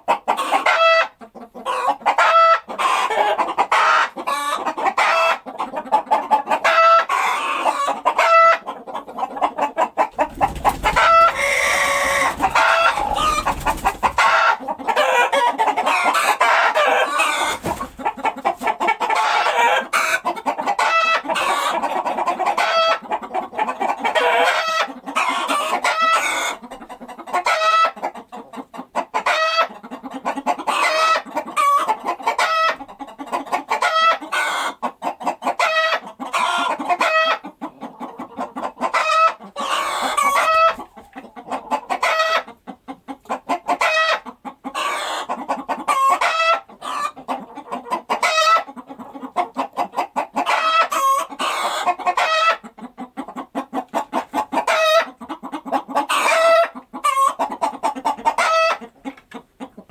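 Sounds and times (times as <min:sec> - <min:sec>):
chickens clucking: 0:00.0 - 0:59.9
rooster crowing: 0:10.9 - 0:13.6.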